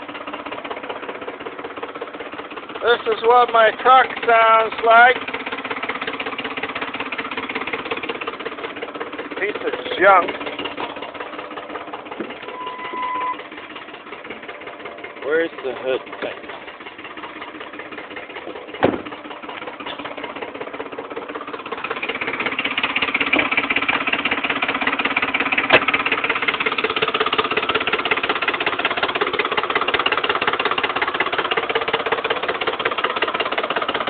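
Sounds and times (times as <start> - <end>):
engine idling with knocking clatter: 0.0 - 34.0.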